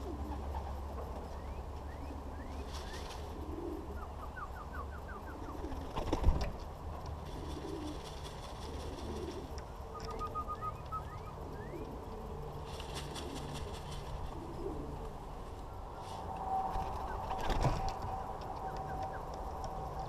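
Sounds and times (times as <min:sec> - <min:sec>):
small birds chirping: 0:00.0 - 0:06.0, 0:07.2 - 0:12.0
pigeons cooing: 0:00.0 - 0:06.5, 0:07.2 - 0:19.9.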